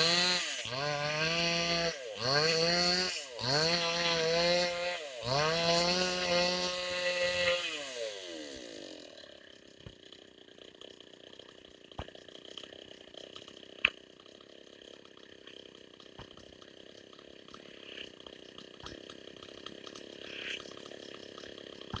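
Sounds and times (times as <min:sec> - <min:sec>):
chainsaw engine running: 0:00.0 - 0:22.0.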